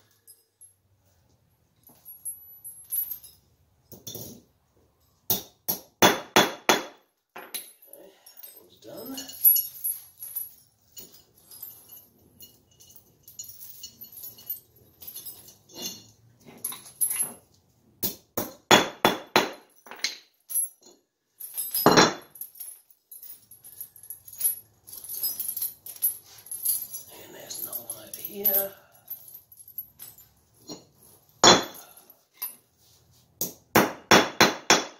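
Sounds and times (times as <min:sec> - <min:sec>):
metal chain links clinking: 0:00.0 - 0:06.0, 0:06.9 - 0:33.7
sharp metal knocks: 0:31.4 - 0:31.8.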